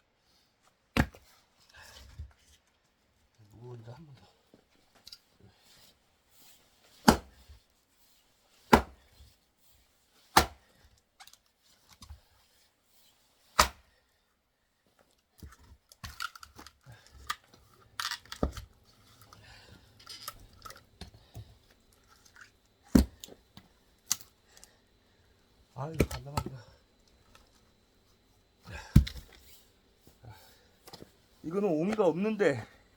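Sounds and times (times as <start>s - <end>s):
axe striking wood: 7.0s - 7.4s, 8.7s - 9.0s, 10.4s - 10.6s, 13.6s - 13.8s, 22.9s - 23.3s.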